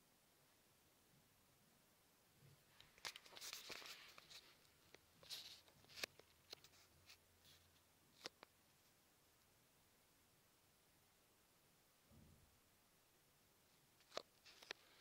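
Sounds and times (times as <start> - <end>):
rustling: 2.6 - 9.0, 14.0 - 15.0.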